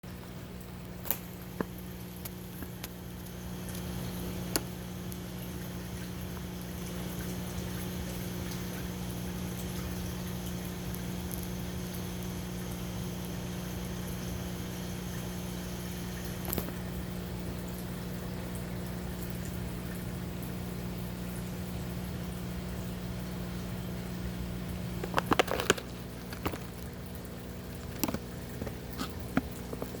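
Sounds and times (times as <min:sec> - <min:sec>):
aquarium pump hum: 0:00.0 - 0:30.0
running water: 0:16.0 - 0:30.0
fish splashing at water surface: 0:24.7 - 0:30.0.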